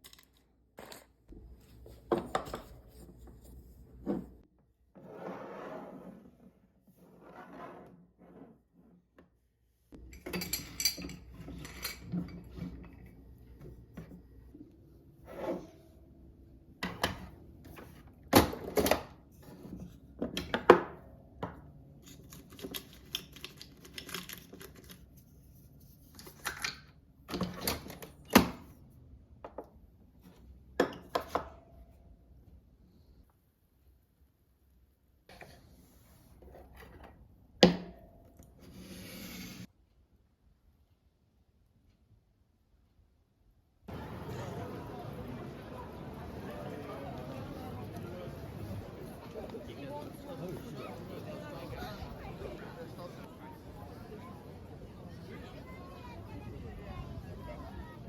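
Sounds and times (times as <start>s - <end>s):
dishes clinking and knocking: 10.0s - 13.1s.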